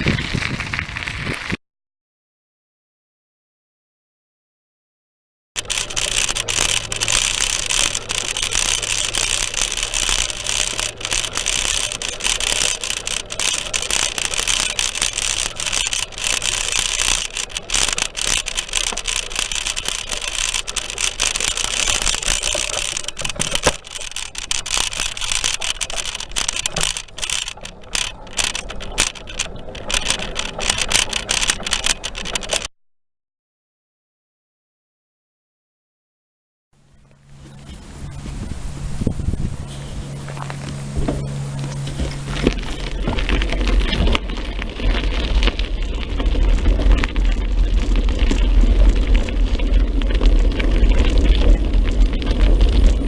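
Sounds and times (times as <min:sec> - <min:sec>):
wind and road noise: 0:00.0 - 0:01.6, 0:05.6 - 0:32.7, 0:37.2 - 0:53.0
bicycle rattles and knocks: 0:05.6 - 0:32.7, 0:40.0 - 0:53.0.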